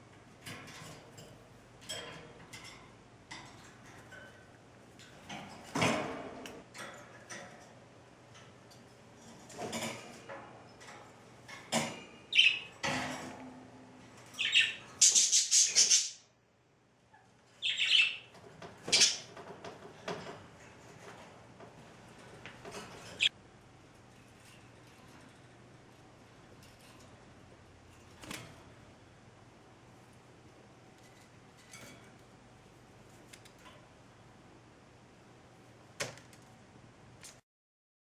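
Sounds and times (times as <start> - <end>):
budgie chirping: 17.6 - 18.3.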